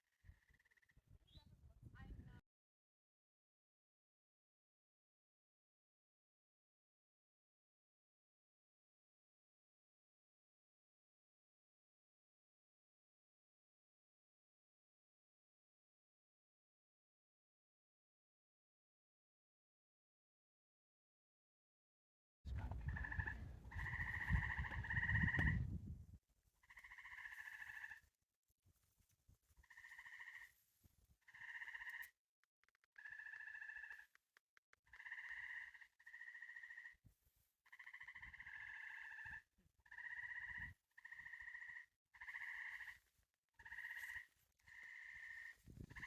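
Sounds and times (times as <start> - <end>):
tree frogs trilling: 0.2 - 1.0, 22.8 - 25.6, 26.6 - 28.1, 29.6 - 30.6, 31.2 - 32.2, 32.9 - 34.2, 34.8 - 37.0, 37.6 - 46.0.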